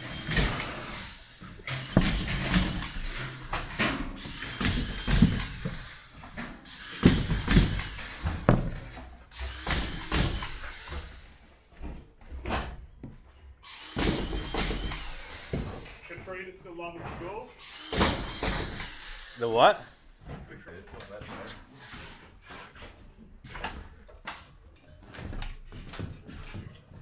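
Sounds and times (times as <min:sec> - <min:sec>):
knocks and scraping of building work: 0:00.0 - 0:27.0.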